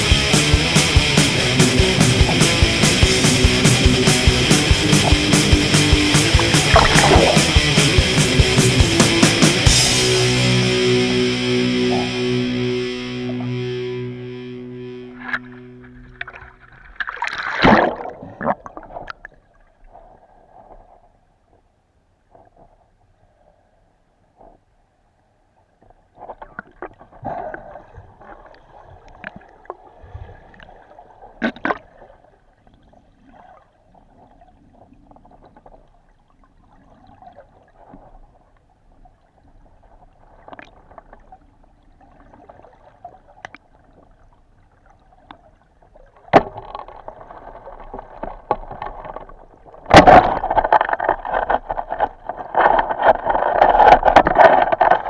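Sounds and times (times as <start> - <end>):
water rushing and gurgling: 0.0 - 13.7, 15.0 - 20.1.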